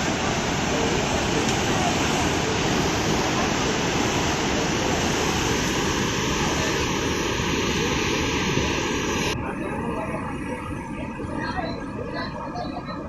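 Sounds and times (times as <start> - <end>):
waterfall roaring: 0.0 - 9.4.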